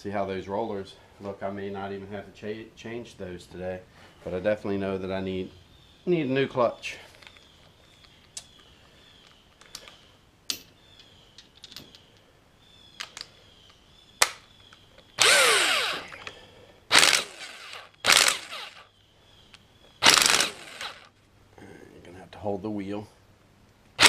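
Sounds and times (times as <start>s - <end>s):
impact wrench whine: 15.2s - 18.9s, 20.0s - 21.1s.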